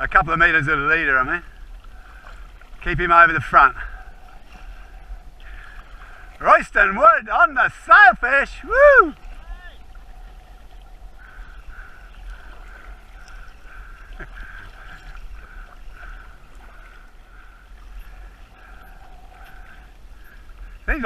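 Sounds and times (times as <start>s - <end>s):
water noise: 0.0s - 21.0s
faint pulsing whine: 3.4s - 6.8s, 8.5s - 21.0s.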